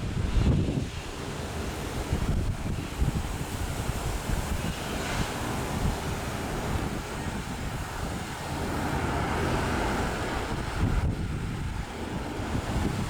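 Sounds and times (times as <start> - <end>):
wind noise on microphone: 0.0 - 13.0.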